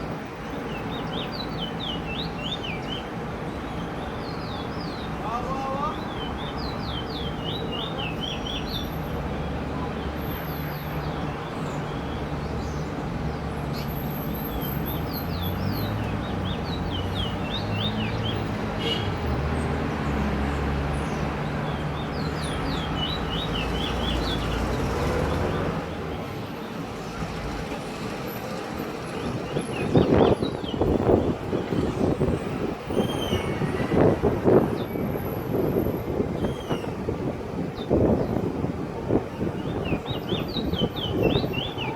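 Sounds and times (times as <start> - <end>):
finch singing whistled notes: 39.6 - 41.9.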